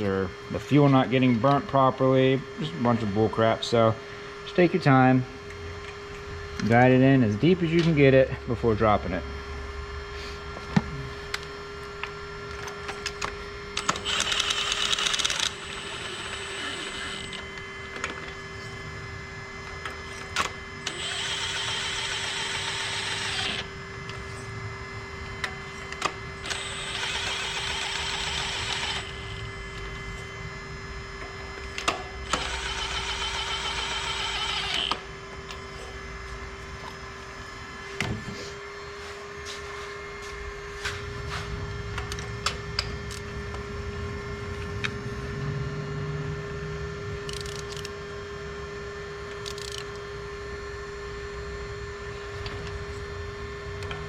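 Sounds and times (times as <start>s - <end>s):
steady low hum: 0.0s - 54.0s
fast ratcheting: 13.8s - 17.3s.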